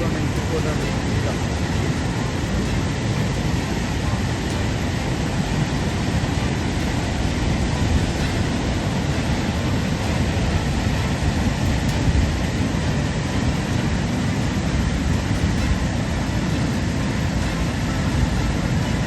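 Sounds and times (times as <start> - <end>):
floodwater rushing: 0.0 - 19.0.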